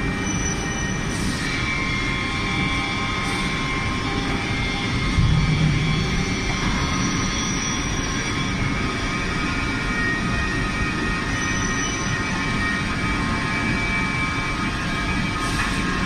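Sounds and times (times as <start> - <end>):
bending machine hum and whine: 0.0 - 16.0
low mechanical rumble: 3.7 - 8.8.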